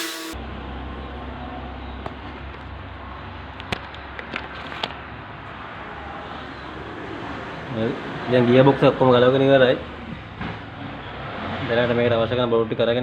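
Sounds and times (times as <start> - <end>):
workshop hum: 0.0 - 0.4.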